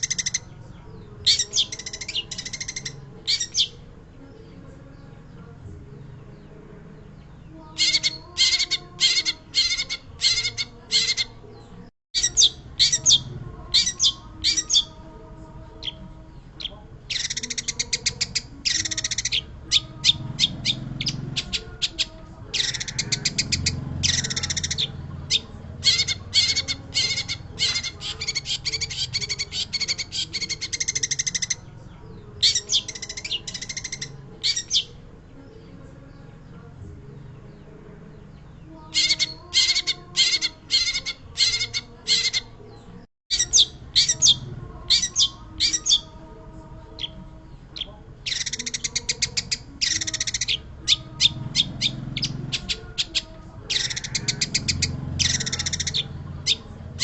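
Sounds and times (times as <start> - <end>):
shrike singing chattering notes: 1.2 - 3.8, 7.7 - 11.4, 16.6 - 31.7, 47.8 - 57.0.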